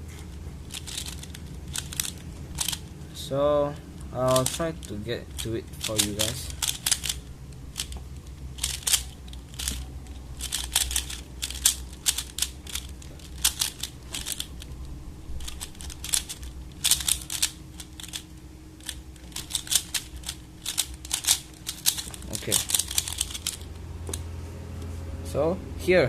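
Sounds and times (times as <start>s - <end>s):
plastic clicks of cube twisting: 0.7s - 2.8s, 4.3s - 7.2s, 7.8s - 9.8s, 15.4s - 18.2s.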